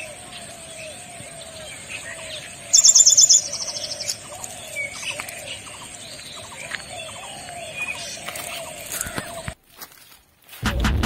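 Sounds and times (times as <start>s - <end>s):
bird chirps: 0.0s - 9.6s
lower repeating bird call: 0.0s - 9.6s
rapid high bird trill: 1.9s - 9.6s.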